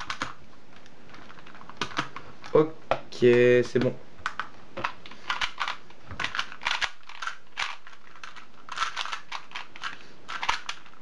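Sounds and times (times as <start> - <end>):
plastic cube clicks: 3.3 - 11.0.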